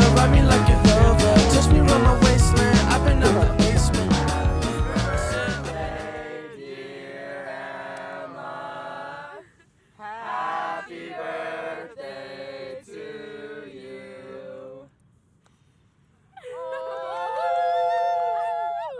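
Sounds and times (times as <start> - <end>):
music beat: 0.0 - 6.2
chanted choir-like voices: 0.0 - 14.9.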